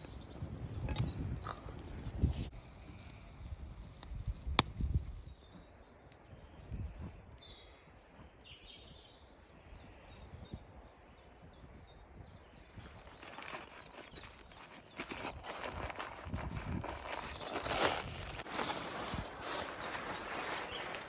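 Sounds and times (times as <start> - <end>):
wind gusting on microphone: 0.1 - 5.6, 9.8 - 21.0
small bird chirping: 5.2 - 9.9, 12.8 - 21.0.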